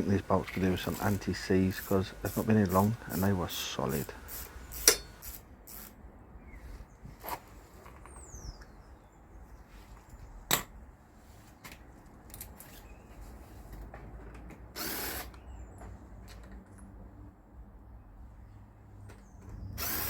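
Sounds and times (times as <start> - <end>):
power tool on bolts: 0.0 - 5.9, 14.8 - 15.4, 19.8 - 20.0
sharp metallic click: 4.8 - 5.9.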